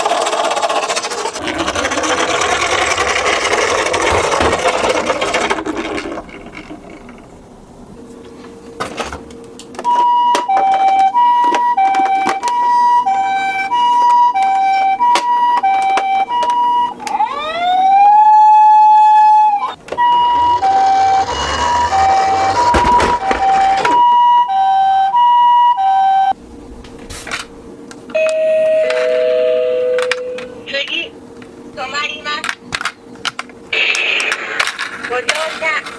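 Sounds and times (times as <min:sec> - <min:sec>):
toy electronic siren: 0:09.9 - 0:26.4
rushing noise: 0:19.8 - 0:23.9.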